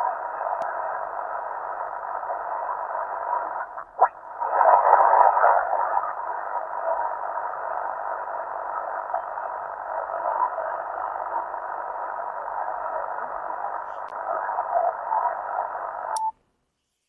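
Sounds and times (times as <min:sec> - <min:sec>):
radio static hiss: 0:00.0 - 0:16.3.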